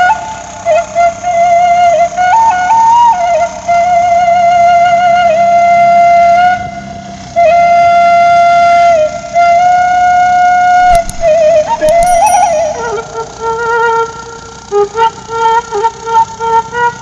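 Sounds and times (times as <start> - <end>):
flute melody: 10.8 - 14.2.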